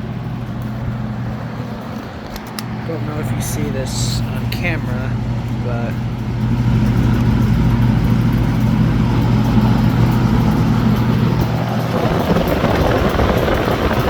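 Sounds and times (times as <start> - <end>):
fan motor humming: 0.0 - 14.0
rush of air from fan: 4.0 - 14.0.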